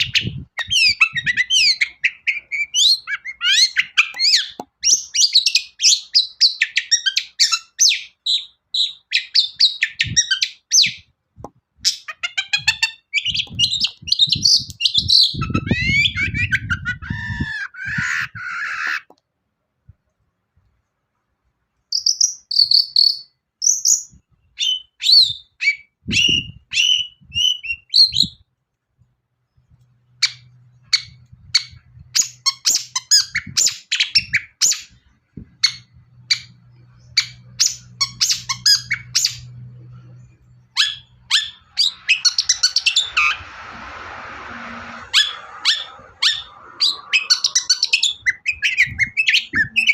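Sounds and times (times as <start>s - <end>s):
shrike singing trills and chirps: 21.9s - 28.4s, 35.6s - 43.7s, 44.8s - 49.9s
faint low hum: 35.0s - 47.2s.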